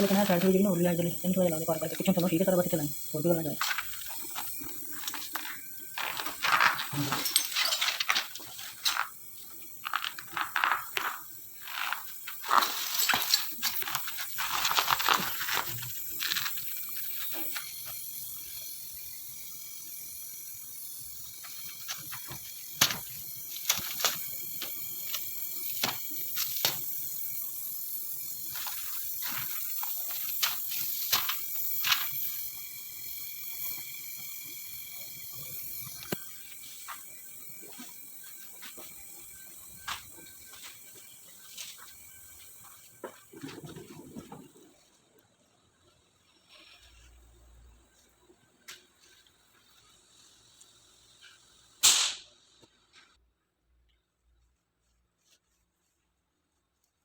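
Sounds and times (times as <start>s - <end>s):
hissing and scraping: 0.0s - 45.2s, 46.2s - 53.2s
metal tools clinking: 3.4s - 9.1s, 9.8s - 17.7s.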